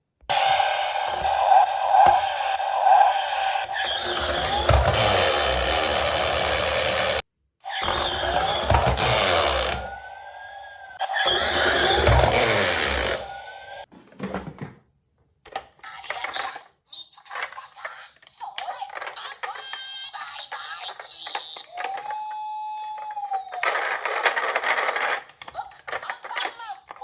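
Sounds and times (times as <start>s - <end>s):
toy car wheels rattling: 3.7s - 7.2s, 7.8s - 10.0s, 11.2s - 13.3s, 17.3s - 22.3s, 22.9s - 27.0s.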